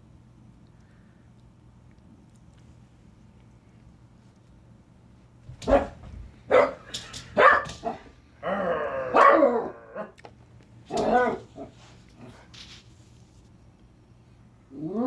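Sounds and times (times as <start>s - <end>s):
dog barking: 5.6s - 8.1s, 9.1s - 10.1s, 10.9s - 11.7s.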